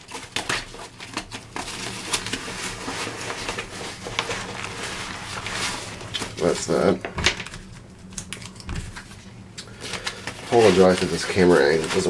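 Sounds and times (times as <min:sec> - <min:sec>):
nylon bag fabric rustling: 0:01.5 - 0:07.0, 0:09.8 - 0:12.0.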